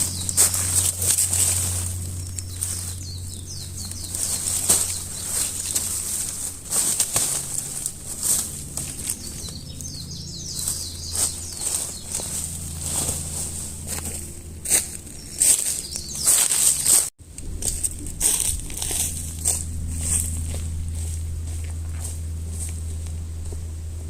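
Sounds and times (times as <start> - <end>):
footsteps crunching through dry leaves: 0.0 - 24.0
faint bird chirps: 9.0 - 12.5.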